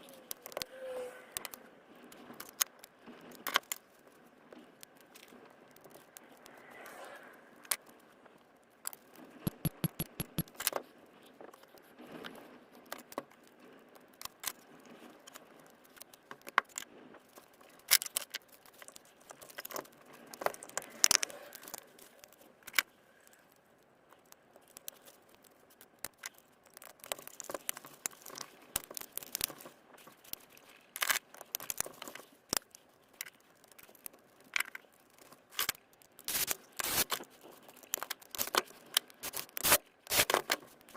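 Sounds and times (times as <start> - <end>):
clicks and taps on plastic: 9.4 - 10.5.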